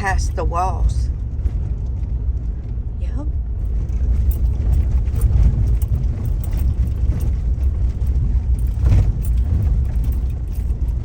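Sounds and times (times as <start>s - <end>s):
car road rumble: 0.0s - 11.0s
small rattles: 3.6s - 11.0s.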